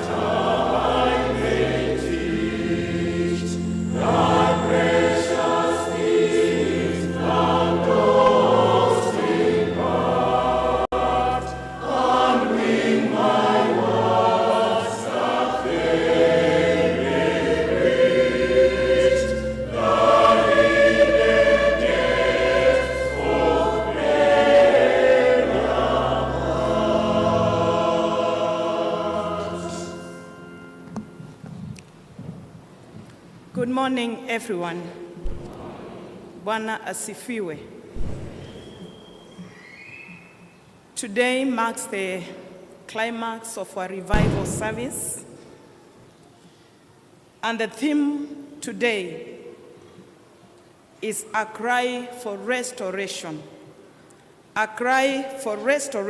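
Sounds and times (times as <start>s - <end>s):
choir singing a hymn: 0.0s - 31.6s, 35.1s - 36.8s, 38.0s - 39.5s, 44.0s - 45.4s.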